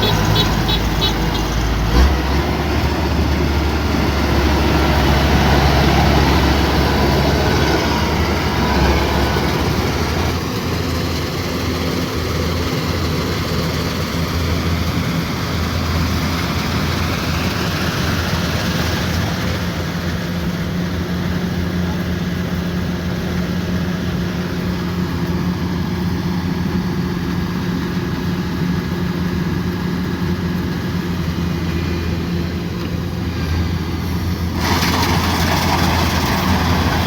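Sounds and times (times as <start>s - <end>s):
combine harvester engine drone: 0.0s - 37.0s.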